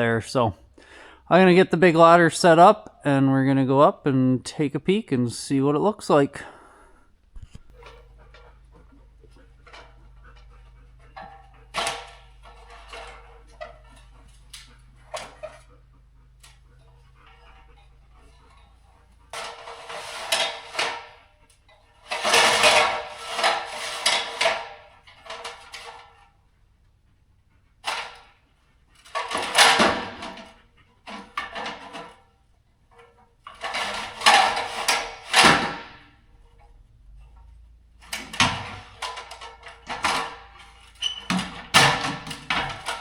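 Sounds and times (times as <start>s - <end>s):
ladder rattling and clattering: 7.4s - 26.3s, 27.8s - 32.3s, 32.9s - 43.0s.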